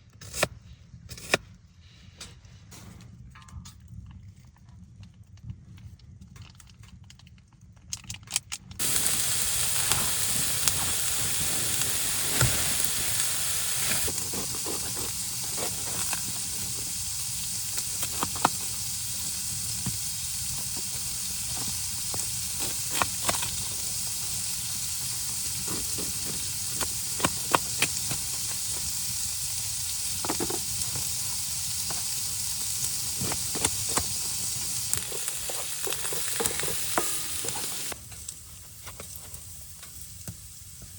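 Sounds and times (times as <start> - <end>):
crackles and pops: 5.8 - 40.9
food sizzling in a pan: 8.8 - 40.9.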